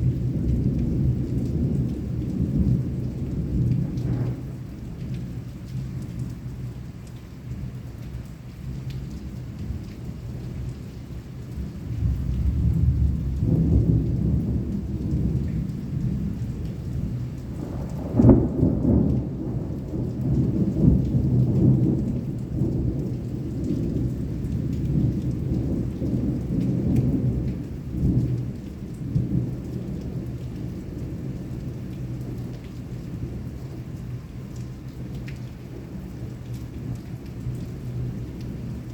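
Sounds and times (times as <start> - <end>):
thunder rumbling: 0.0 - 5.3, 12.0 - 33.9
heavy rain: 0.0 - 38.9.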